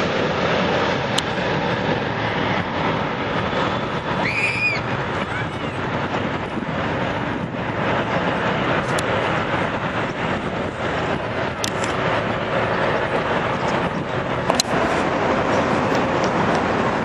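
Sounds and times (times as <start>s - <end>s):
jet engines steady noise: 0.0s - 17.0s.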